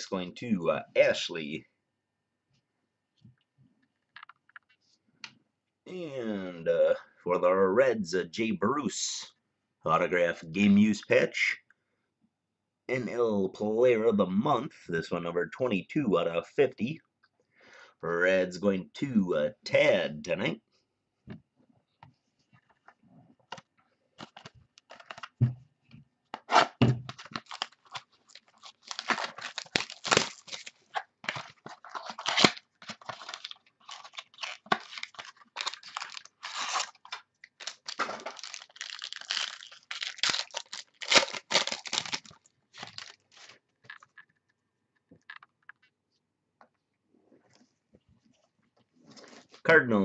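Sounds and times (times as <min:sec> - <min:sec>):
cards crinkling and rustling: 0:23.5 - 0:25.4, 0:26.3 - 0:44.4
packaging tearing: 0:26.5 - 0:43.6.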